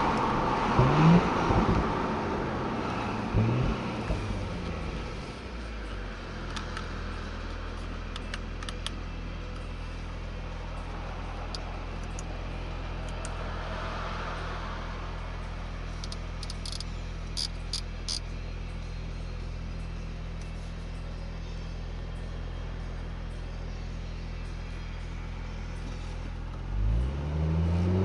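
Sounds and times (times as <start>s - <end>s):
car engine running steadily: 0.0s - 28.0s.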